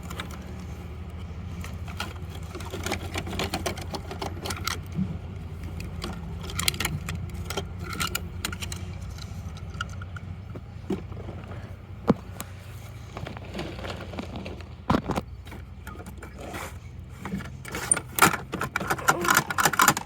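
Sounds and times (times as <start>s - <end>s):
steady low hum: 0.0s - 20.0s
plastic toy parts clicking and rattling: 1.5s - 10.3s, 13.1s - 20.0s.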